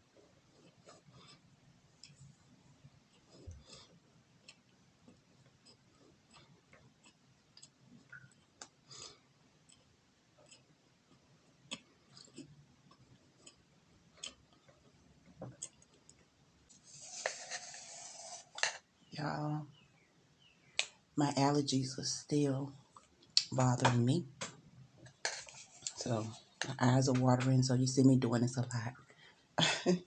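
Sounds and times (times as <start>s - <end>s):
faint small clicks and ticks: 3.1s - 16.8s.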